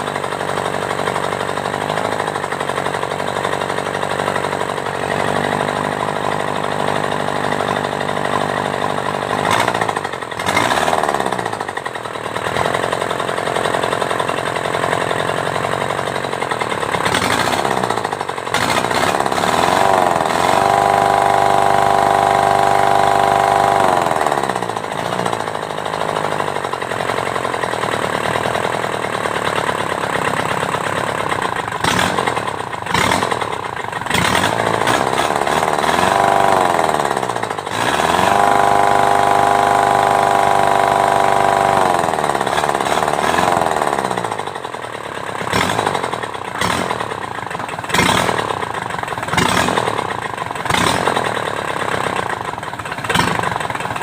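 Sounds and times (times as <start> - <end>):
diesel engine revving: 4.4 - 11.8, 16.9 - 27.2, 30.9 - 54.0.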